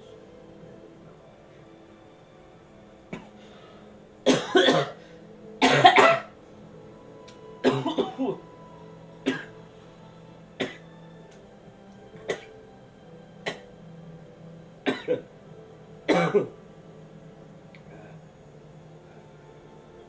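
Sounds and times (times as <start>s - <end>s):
person coughing: 4.3s - 5.0s, 5.6s - 6.3s, 7.6s - 8.4s, 14.9s - 15.2s, 16.1s - 16.5s.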